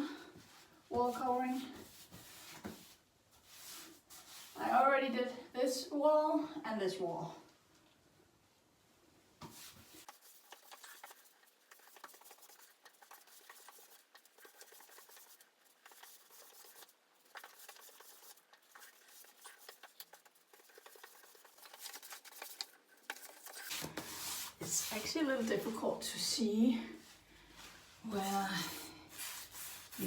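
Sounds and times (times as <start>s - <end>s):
wet glue scratching on a wall: 9.4s - 25.8s, 28.2s - 30.0s.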